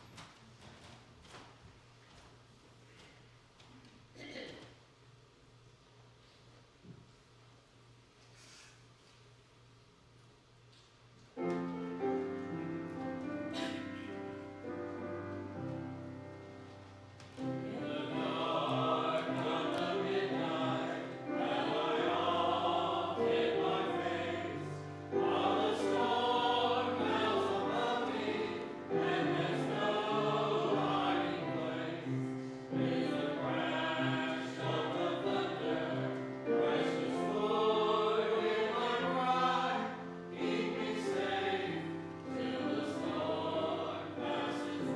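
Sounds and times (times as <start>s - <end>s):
group singing a hymn: 11.5s - 44.9s.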